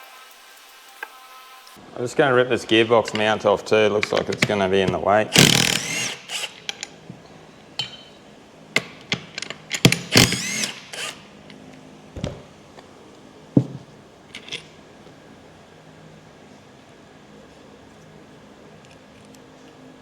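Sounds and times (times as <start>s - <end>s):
tools and metal parts clicking: 2.7s - 8.2s, 8.8s - 11.6s, 14.3s - 14.7s
power tool burst: 5.3s - 6.7s, 9.8s - 11.2s.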